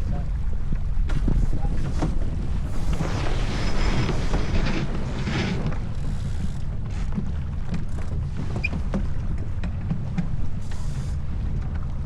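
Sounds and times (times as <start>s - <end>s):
wind buffeting microphone: 0.0s - 12.0s
water hissing along hull: 1.4s - 7.2s, 10.4s - 11.6s.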